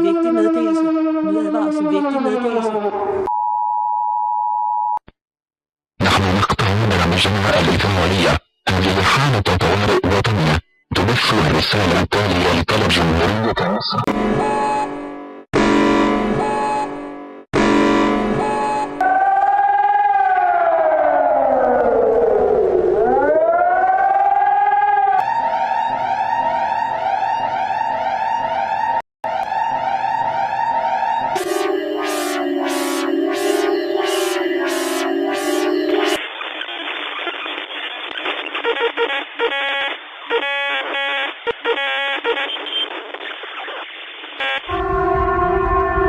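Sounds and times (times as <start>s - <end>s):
wailing emergency siren: 0.0s - 3.3s, 18.4s - 36.2s, 44.4s - 46.0s
alarm tone with upward sweeps: 18.4s - 36.2s
radio static hiss: 32.0s - 44.7s.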